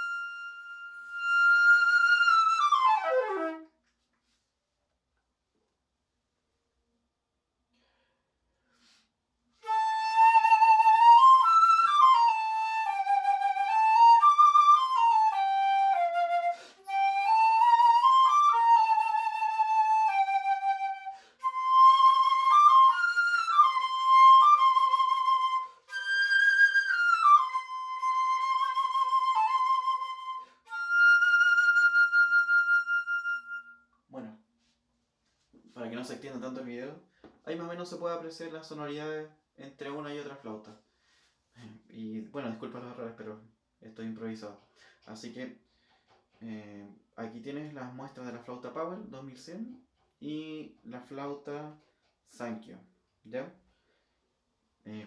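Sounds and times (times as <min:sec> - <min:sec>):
solo flute melody: 0:00.0 - 0:04.0, 0:09.6 - 0:34.8.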